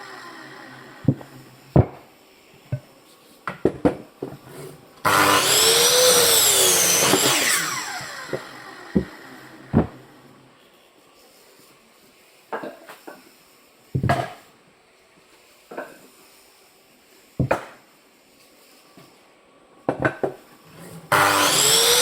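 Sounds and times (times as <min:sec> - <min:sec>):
electric saw cutting wood: 0:00.0 - 0:01.8, 0:04.5 - 0:10.4, 0:20.8 - 0:22.0.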